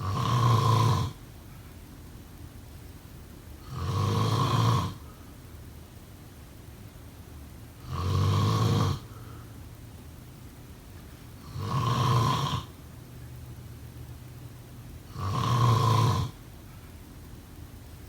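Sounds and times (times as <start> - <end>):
person snoring: 0.0 - 1.2, 3.7 - 5.0, 7.8 - 9.1, 11.4 - 12.7, 15.1 - 16.4.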